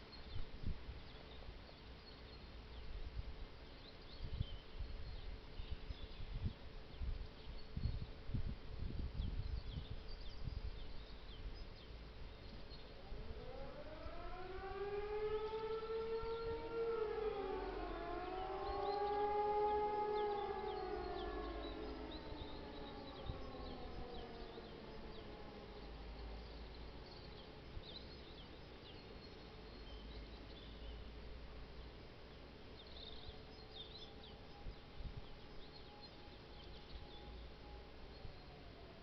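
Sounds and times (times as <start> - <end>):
civil defence sirens winding: 12.6 - 27.5, 33.0 - 39.0
faint bird chirps: 20.0 - 31.1, 32.7 - 38.9.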